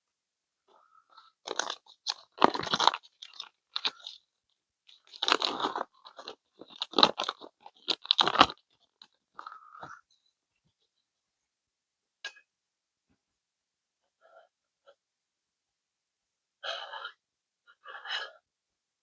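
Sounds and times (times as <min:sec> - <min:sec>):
plastic bag crinkling: 0:01.4 - 0:04.2, 0:04.9 - 0:09.6.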